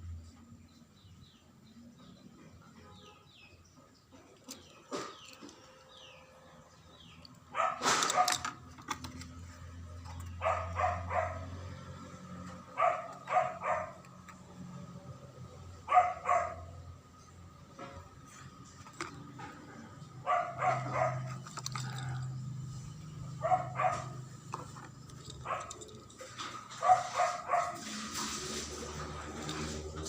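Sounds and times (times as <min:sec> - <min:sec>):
dog barking: 0:07.5 - 0:08.6, 0:10.4 - 0:11.6, 0:12.6 - 0:14.1, 0:15.8 - 0:16.8, 0:20.2 - 0:21.4, 0:23.3 - 0:24.3, 0:25.4 - 0:25.8, 0:26.7 - 0:28.0.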